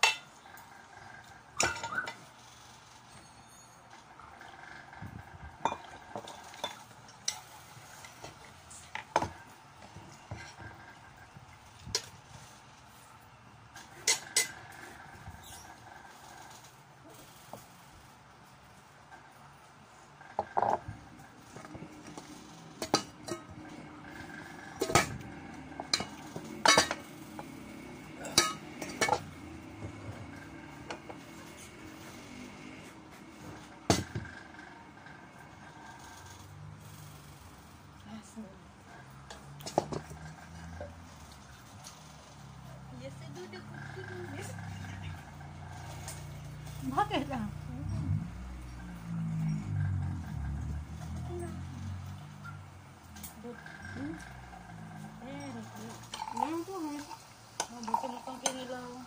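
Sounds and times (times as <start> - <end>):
cutlery clinking on a plate: 26.0 - 27.0.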